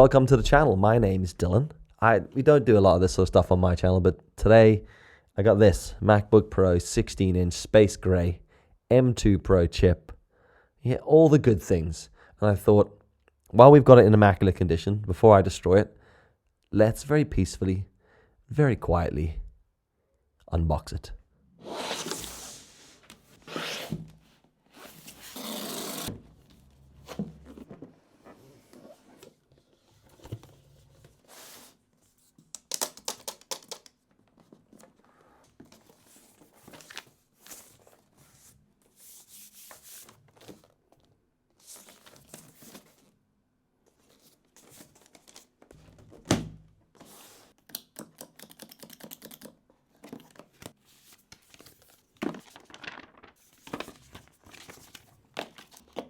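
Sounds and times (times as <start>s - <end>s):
cardboard and paper rustling: 33.6s - 43.2s, 43.9s - 46.3s, 50.0s - 56.0s.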